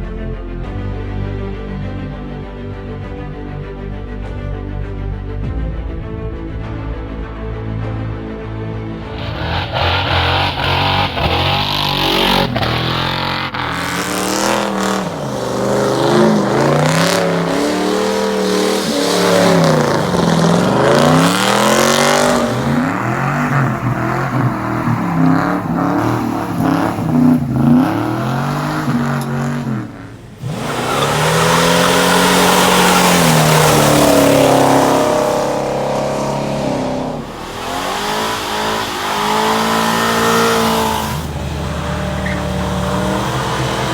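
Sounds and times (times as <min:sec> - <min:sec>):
car engine revving: 0:08.9 - 0:43.9.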